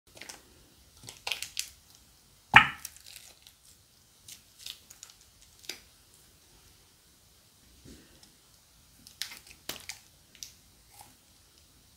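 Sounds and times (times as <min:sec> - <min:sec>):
slime and plastic bags crinkling: 0:00.1 - 0:02.0, 0:02.8 - 0:05.9, 0:09.0 - 0:11.1.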